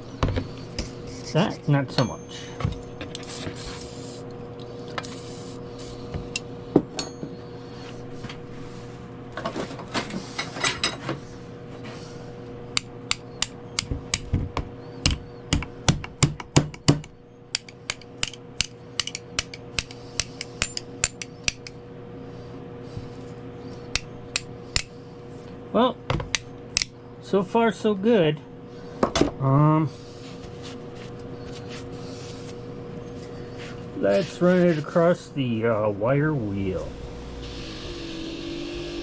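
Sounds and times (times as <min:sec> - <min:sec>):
hammer striking metal wrench: 0:17.6 - 0:21.7
low hum: 0:28.4 - 0:39.0.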